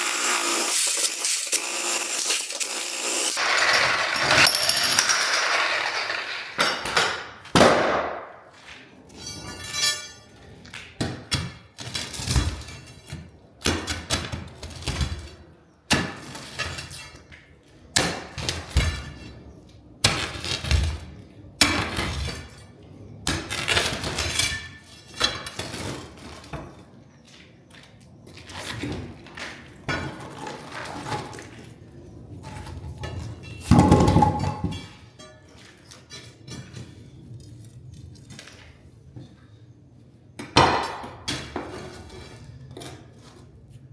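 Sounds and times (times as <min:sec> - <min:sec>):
concrete pieces crashing and clinking: 0:00.0 - 0:07.1.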